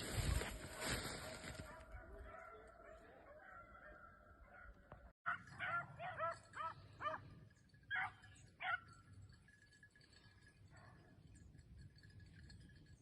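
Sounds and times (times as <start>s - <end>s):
dogs yelping barks: 1.4s - 7.3s, 7.9s - 9.0s.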